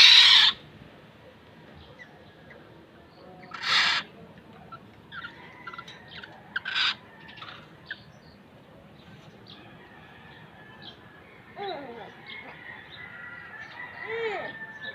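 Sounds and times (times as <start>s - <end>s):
bird harsh rasping call: 0.0s - 0.6s, 3.4s - 4.1s, 5.2s - 7.7s.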